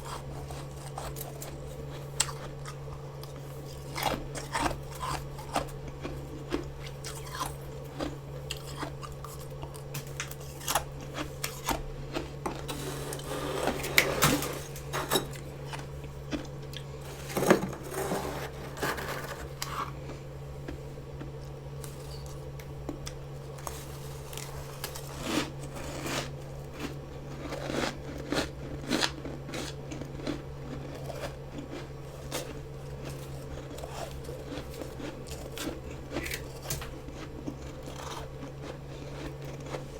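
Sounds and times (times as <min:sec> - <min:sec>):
frost crunching being chewed: 0:00.0 - 0:39.9.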